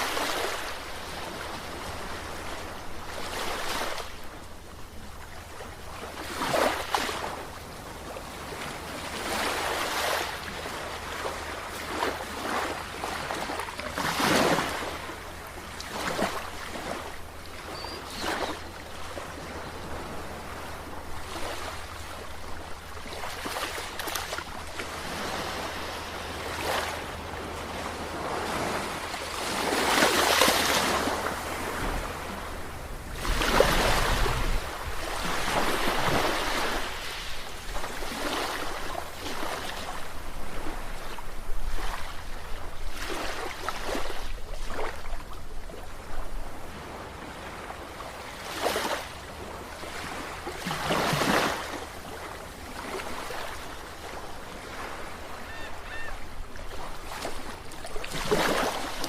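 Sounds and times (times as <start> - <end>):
sea waves breaking: 0.0 - 59.0.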